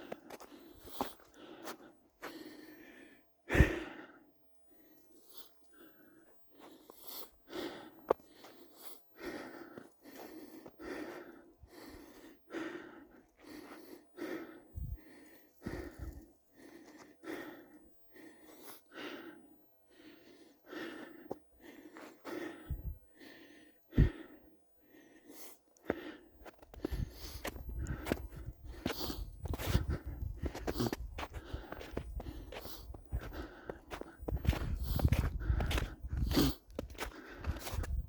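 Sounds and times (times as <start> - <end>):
footsteps crunching in snow: 26.8 - 38.0.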